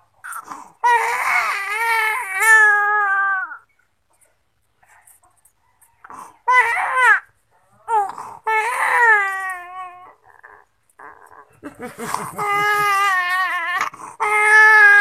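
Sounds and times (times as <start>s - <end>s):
infant crying: 0.3s - 3.6s, 6.1s - 7.3s, 7.9s - 15.0s.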